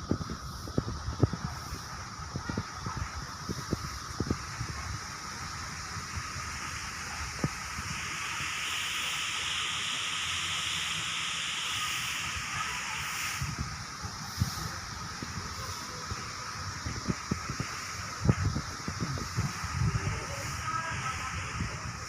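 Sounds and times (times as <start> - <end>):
low wind rumble on microphone: 0.0 - 22.0
steady hiss: 0.0 - 22.0.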